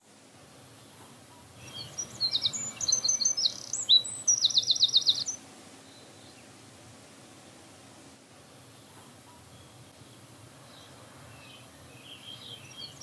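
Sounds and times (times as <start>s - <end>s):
faint steady hiss: 0.0s - 13.0s
bird chirping and trilling: 1.6s - 5.4s.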